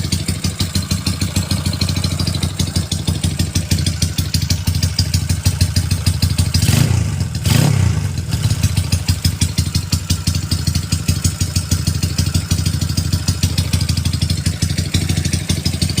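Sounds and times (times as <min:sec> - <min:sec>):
motorcycle idling and revving: 0:00.0 - 0:16.0.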